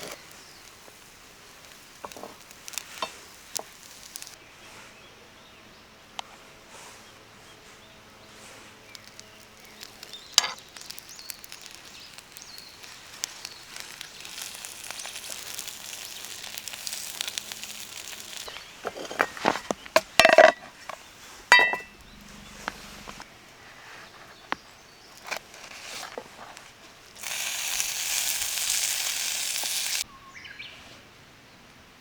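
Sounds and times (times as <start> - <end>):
food sizzling in a pan: 0.0 - 4.4, 9.0 - 19.6, 27.0 - 30.1
cookware knocking: 21.5 - 21.9
short ringing clink: 21.5 - 22.0.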